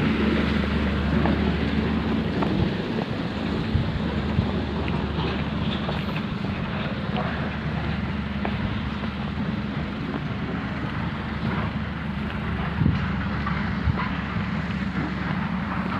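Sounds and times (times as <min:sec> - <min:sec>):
machinery hum: 0:00.0 - 0:15.9.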